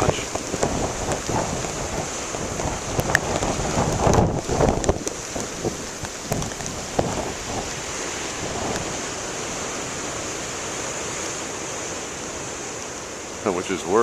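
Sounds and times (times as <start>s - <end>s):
wind noise on microphone: 0.0s - 10.7s
ocean surf washing: 0.0s - 14.0s.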